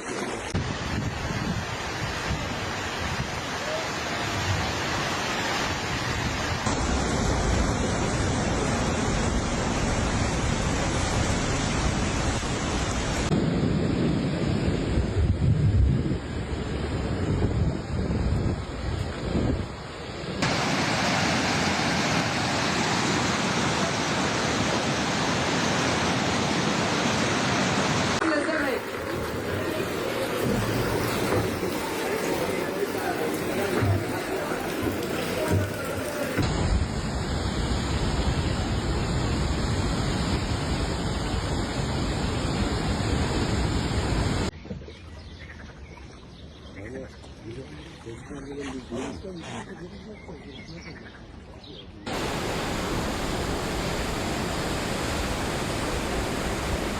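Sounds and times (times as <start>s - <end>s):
steady rush of water: 0.0s - 44.5s, 52.0s - 56.9s
wind-blown rumble: 0.5s - 3.6s, 4.3s - 20.4s, 28.6s - 44.5s, 52.1s - 56.9s.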